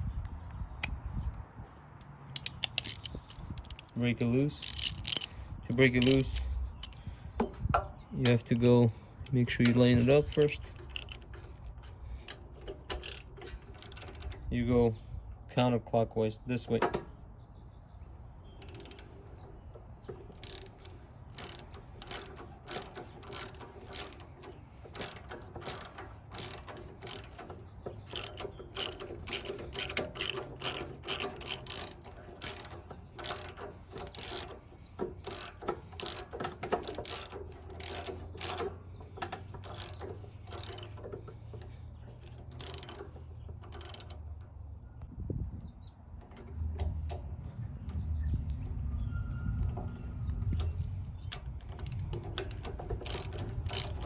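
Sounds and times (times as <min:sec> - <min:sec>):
ratchet wrench clicking: 0:02.0 - 0:07.1, 0:09.2 - 0:14.5, 0:18.6 - 0:19.3, 0:20.0 - 0:44.4, 0:49.6 - 0:54.0.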